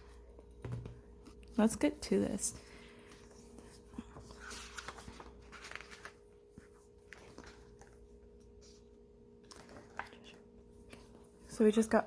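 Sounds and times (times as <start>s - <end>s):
faint electrical hum: 0.0s - 12.0s
paper packaging rustling: 3.0s - 8.6s.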